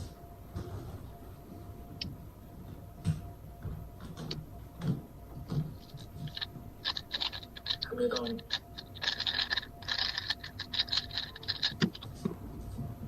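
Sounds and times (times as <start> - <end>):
puzzle cube plastic clicks: 6.3 - 12.1.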